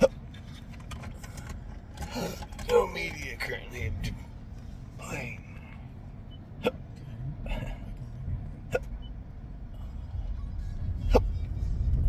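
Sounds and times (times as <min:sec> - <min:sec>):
man hiccuping: 0:00.0 - 0:00.2, 0:06.6 - 0:06.9, 0:08.7 - 0:09.0
car interior rumble: 0:00.0 - 0:12.0.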